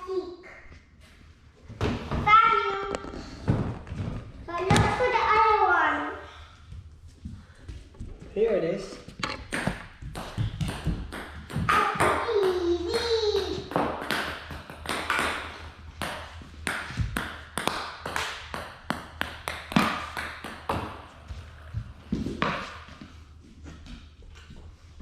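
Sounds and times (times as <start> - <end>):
child's voice: 0.0 - 0.7, 2.2 - 3.2, 4.5 - 6.3, 11.7 - 13.7.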